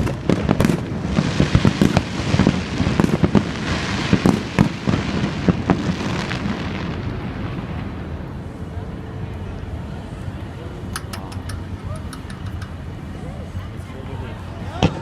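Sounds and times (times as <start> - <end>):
fireworks bangs: 0.0 - 8.1
fireworks crackling: 0.0 - 8.7, 10.9 - 13.6.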